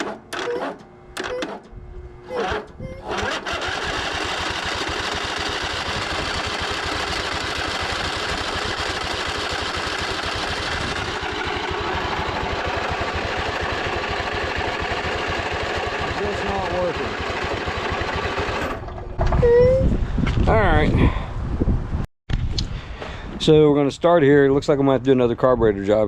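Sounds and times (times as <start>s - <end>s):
lawn tractor engine running: 0.0s - 1.6s, 2.2s - 19.2s.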